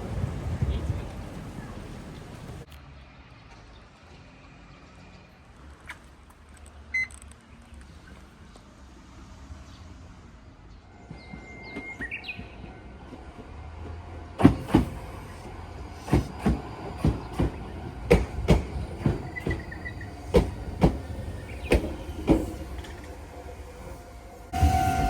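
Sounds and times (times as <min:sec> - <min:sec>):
low train rumble: 0:00.0 - 0:02.7, 0:08.7 - 0:25.0
train wheels clacking over rail joints: 0:16.0 - 0:23.1.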